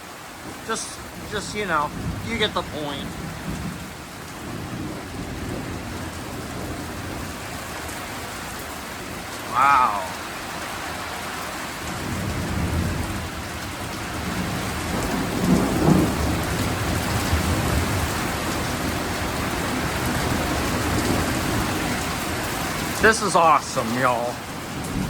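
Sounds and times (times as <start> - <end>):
steady rain falling: 0.0 - 25.0
thunder rumbling: 0.4 - 7.6, 14.1 - 22.0.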